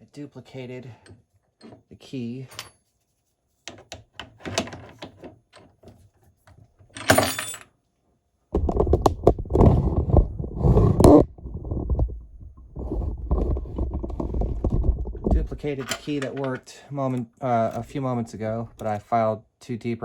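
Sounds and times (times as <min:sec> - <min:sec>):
low scraping and rubbing: 0:08.6 - 0:15.8.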